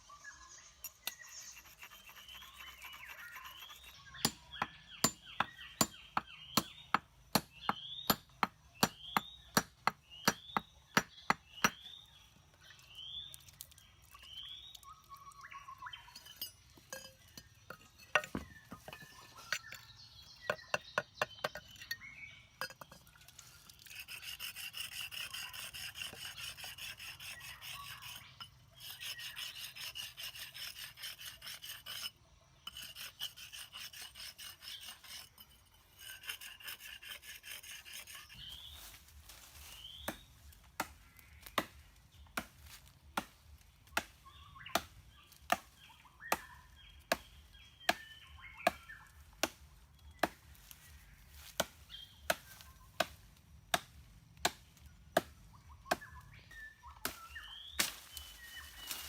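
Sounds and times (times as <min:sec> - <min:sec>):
rasping on abrasive surface: 0:01.0 - 0:11.8, 0:23.6 - 0:39.7.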